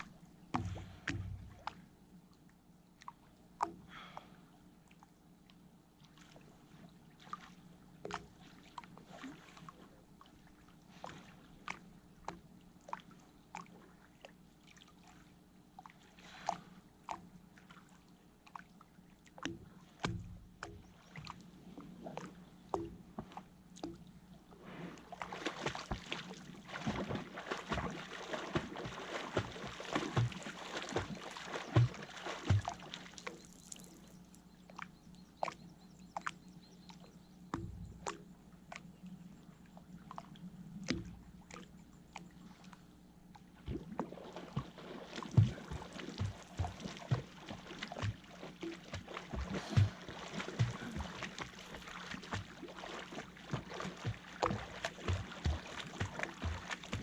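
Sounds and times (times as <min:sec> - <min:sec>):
river water splashing: 0:05.9 - 0:35.6, 0:43.4 - 0:57.0.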